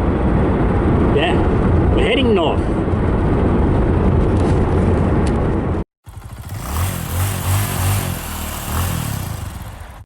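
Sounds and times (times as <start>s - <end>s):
car engine and road rumble: 0.0s - 10.0s
bright engine rumble with drone: 5.2s - 10.0s.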